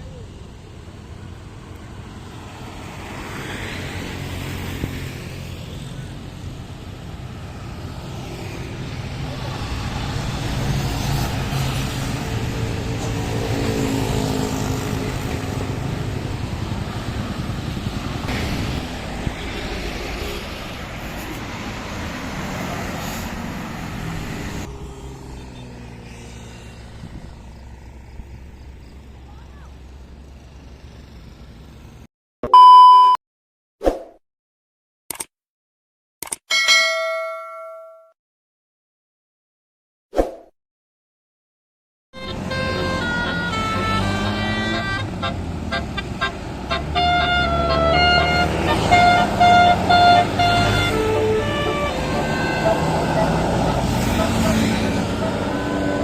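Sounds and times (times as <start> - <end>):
road traffic rumble: 0.0 - 32.1, 42.2 - 56.0
vehicle passing: 7.2 - 32.0, 42.2 - 56.0
humming engine: 23.0 - 32.0, 42.2 - 56.0.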